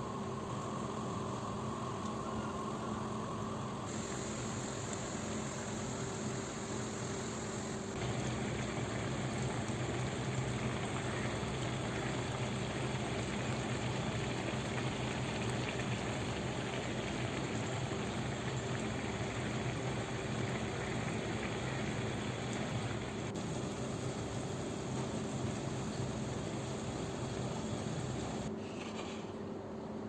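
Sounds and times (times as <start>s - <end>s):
food hissing on a stovetop: 3.4s - 29.2s
faint low hum: 8.0s - 28.5s.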